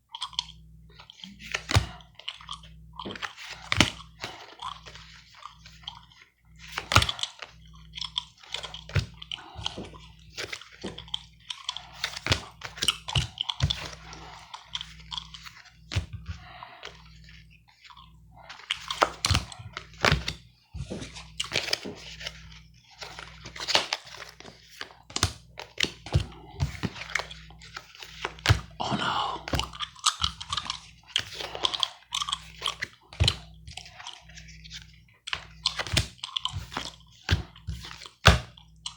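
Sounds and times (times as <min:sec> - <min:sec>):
gum chewing: 0:00.1 - 0:06.2, 0:06.8 - 0:15.5, 0:28.3 - 0:34.3
playing cards rustling and snapping: 0:00.2 - 0:38.9.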